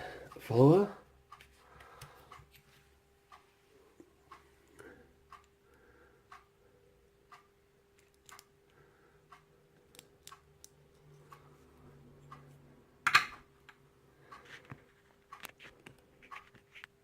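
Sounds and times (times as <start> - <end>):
metal clicks of padlock parts: 8.0 - 8.5, 9.8 - 11.0.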